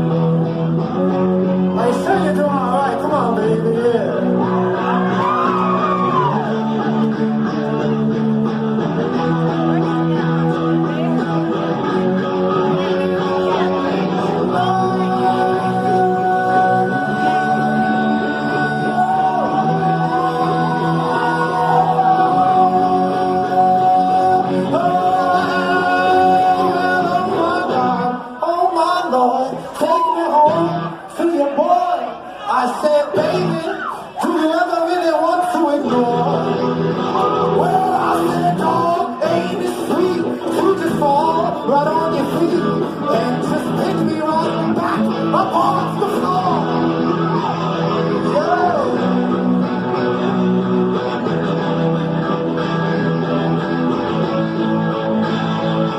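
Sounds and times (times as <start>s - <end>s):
live band playing: 0.0s - 31.8s, 32.9s - 55.9s
person singing long notes: 11.9s - 30.9s.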